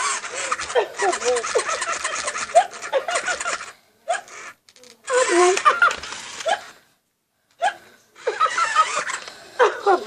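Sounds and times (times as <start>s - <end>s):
talking toy laughing high-pitched: 0.0s - 4.4s, 5.1s - 6.7s, 8.2s - 10.0s.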